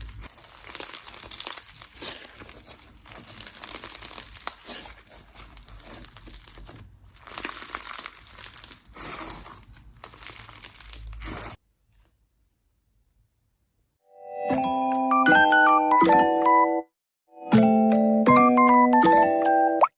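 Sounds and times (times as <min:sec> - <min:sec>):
slime squished by hand: 0:00.0 - 0:11.6.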